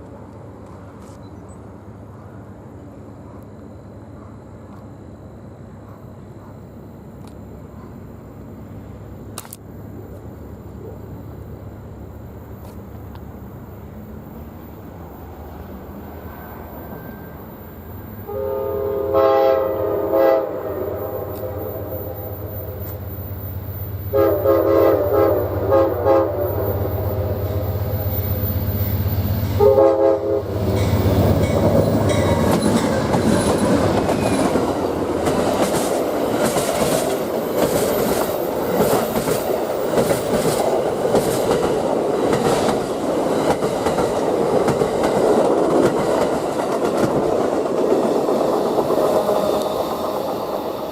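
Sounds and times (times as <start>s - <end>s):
train engine hum: 0.0s - 50.9s
train horn blasts: 18.2s - 23.0s, 24.1s - 28.2s, 29.6s - 31.0s
train wheels clattering: 30.6s - 50.9s.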